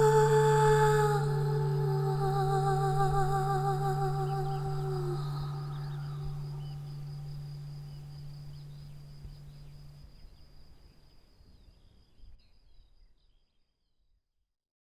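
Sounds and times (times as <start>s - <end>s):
low drone note: 0.0s - 10.0s.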